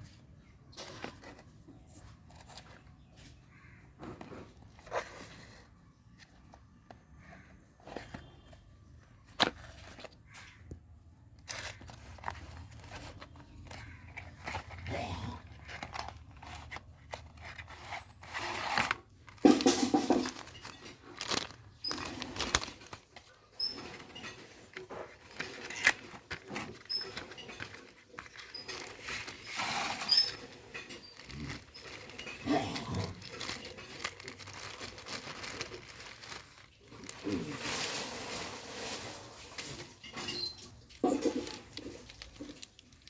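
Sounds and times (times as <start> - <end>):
scraping and crunching handling noises: 0.0 - 43.0
rustling: 11.3 - 43.0.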